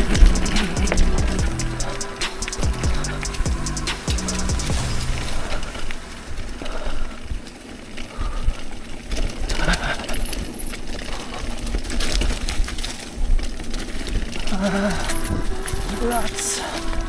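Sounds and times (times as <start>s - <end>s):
mountain bike rattling over dirt: 4.7s - 17.0s
high squeak: 10.2s - 10.8s, 14.9s - 17.0s.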